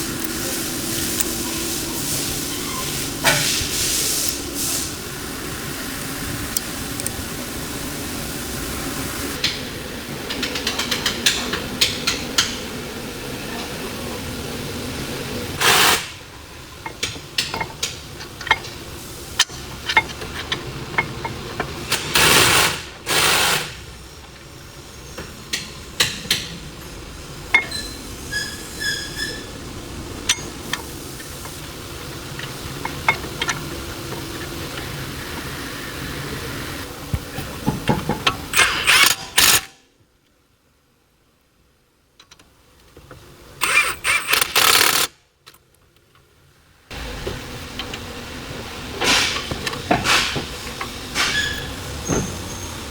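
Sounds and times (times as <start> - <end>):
short hissing bursts: 0.0 - 9.4, 15.6 - 16.3, 21.8 - 24.2, 48.7 - 52.9
steady background hum: 0.0 - 52.9.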